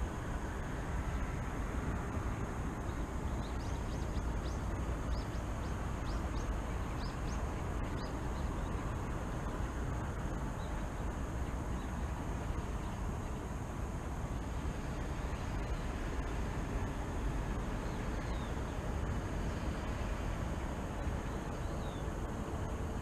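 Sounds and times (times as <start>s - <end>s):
low rumble of city traffic: 0.0s - 23.0s
small birds chirping: 2.8s - 13.4s, 17.6s - 18.9s, 20.9s - 22.2s.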